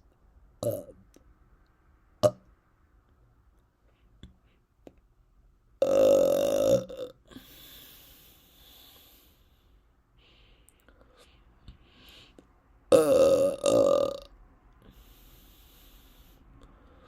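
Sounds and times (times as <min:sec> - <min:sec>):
woman burping: 0:05.8 - 0:07.2, 0:12.9 - 0:14.3
faint breathy hiss: 0:07.3 - 0:12.7, 0:14.7 - 0:17.0.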